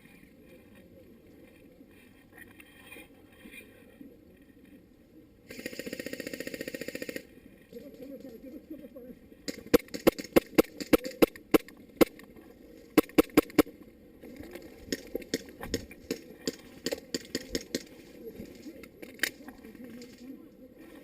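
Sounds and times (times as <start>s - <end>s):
airsoft gun shots: 9.5s - 12.2s, 13.0s - 13.7s
faint pops and clicks: 13.0s - 20.3s.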